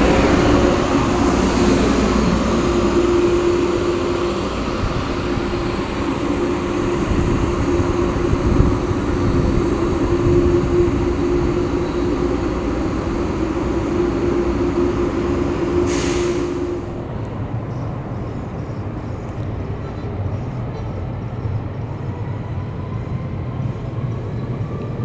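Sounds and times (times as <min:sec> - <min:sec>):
steady hum: 0:00.0 - 0:17.0
train rushing past: 0:00.0 - 0:25.0.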